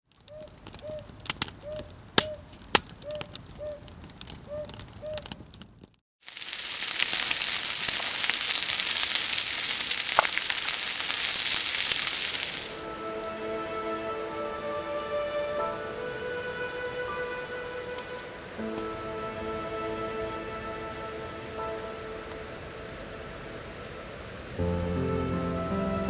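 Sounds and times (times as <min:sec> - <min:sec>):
campfire crackling and popping: 0:00.0 - 0:12.9
food sizzling in a pan: 0:06.2 - 0:12.9.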